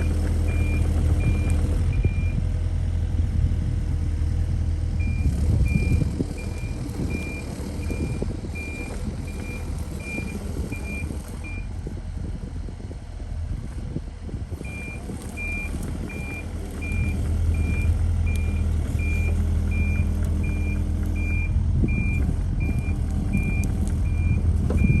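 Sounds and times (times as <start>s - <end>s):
diesel engine running: 0.0s - 25.0s
travel alarm beeping: 5.0s - 11.6s, 14.7s - 25.0s.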